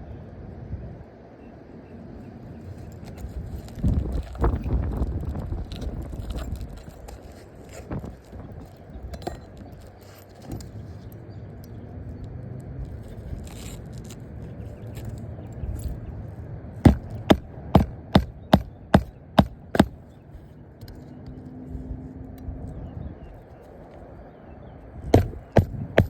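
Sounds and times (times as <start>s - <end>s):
low background rumble: 10.6s - 20.5s, 24.9s - 26.0s.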